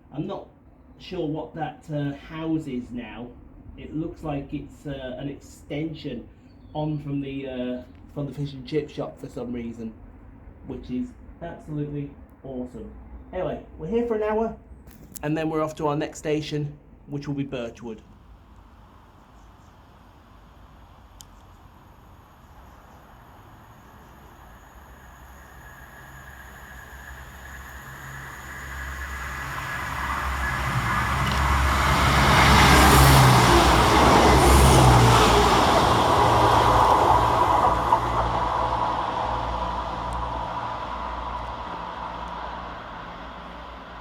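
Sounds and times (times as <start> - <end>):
diesel train passing: 15.3 - 44.0.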